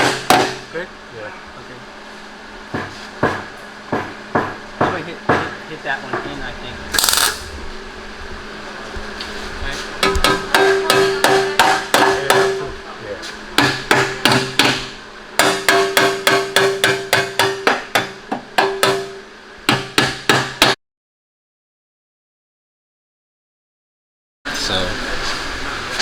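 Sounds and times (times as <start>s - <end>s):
hammer ringing on metal: 15.4s - 19.2s.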